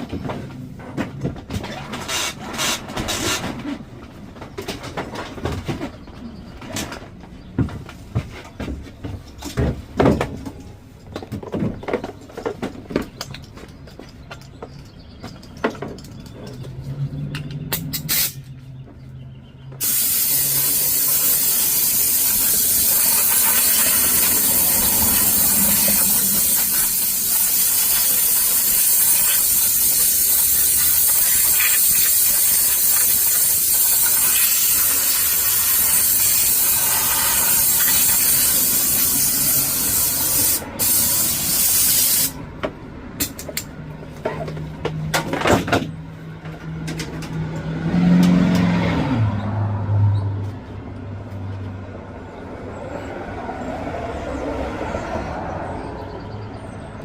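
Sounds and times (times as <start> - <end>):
pressurised air jet hissing: 19.8 - 42.4.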